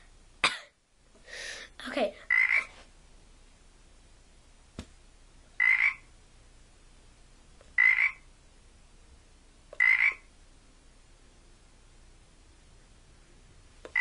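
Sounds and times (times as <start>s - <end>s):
frog croaking: 2.3s - 2.7s, 5.6s - 6.1s, 7.7s - 8.3s, 9.8s - 10.3s.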